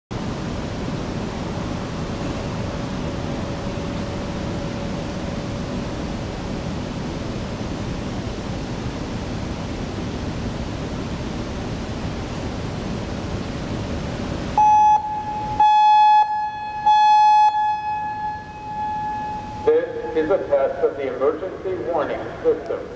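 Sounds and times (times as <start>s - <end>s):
rushing outdoor background noise: 0.1s - 22.9s
faint steady tone: 14.6s - 21.0s.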